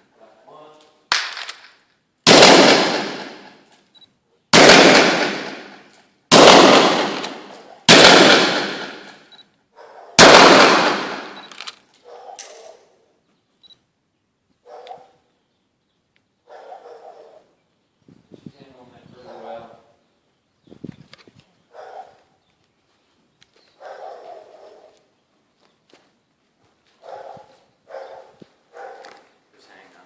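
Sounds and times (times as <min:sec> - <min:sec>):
revolver shots echoing: 0:04.6 - 0:09.3, 0:10.2 - 0:11.4.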